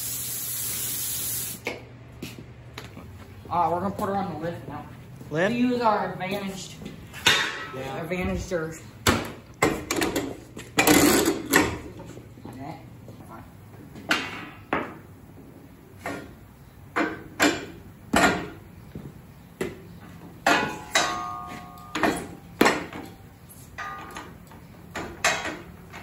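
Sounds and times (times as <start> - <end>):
metal clanks and knocks: 7.2 - 7.8, 9.0 - 12.0, 20.4 - 23.2, 23.8 - 26.0.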